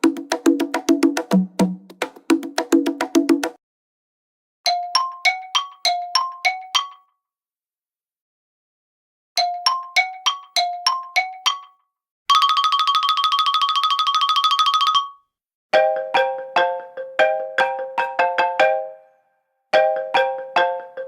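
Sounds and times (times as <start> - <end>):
bell-like chime ringtone: 12.3 - 15.3.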